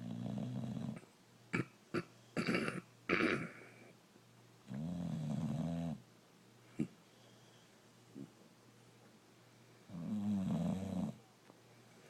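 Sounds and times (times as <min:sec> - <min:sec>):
dog snoring: 0:00.0 - 0:01.1, 0:04.7 - 0:06.0, 0:09.9 - 0:11.2.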